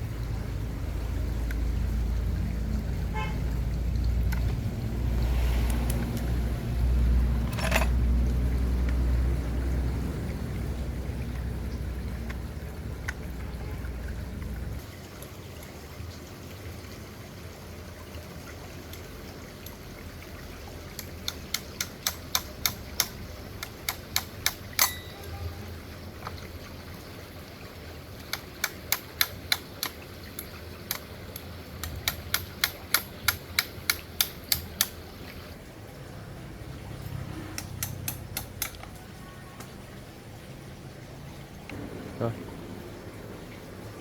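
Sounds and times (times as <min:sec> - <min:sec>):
sharp evenly spaced clicks: 0:20.9 - 0:25.1, 0:28.2 - 0:35.1, 0:37.6 - 0:39.1.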